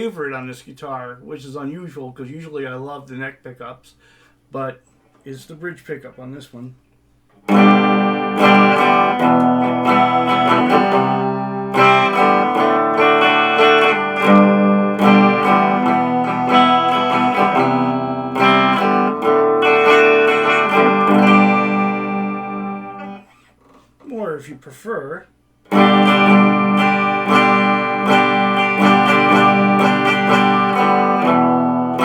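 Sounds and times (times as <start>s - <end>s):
electric guitar chords and notes: 7.4s - 23.4s, 25.7s - 32.0s.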